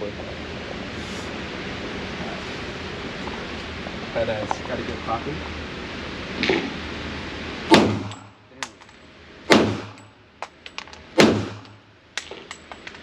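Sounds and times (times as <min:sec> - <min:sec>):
loud handgun shots: 0:07.7 - 0:08.4, 0:09.5 - 0:10.1, 0:11.1 - 0:12.5.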